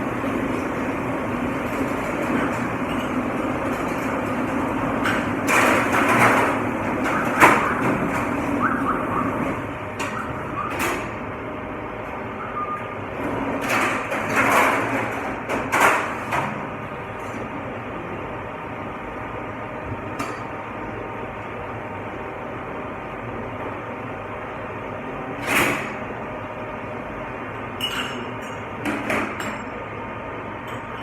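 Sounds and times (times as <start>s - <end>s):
dishwashing machine noise: 0.0s - 31.0s
dishes and trays clattering: 2.4s - 8.6s.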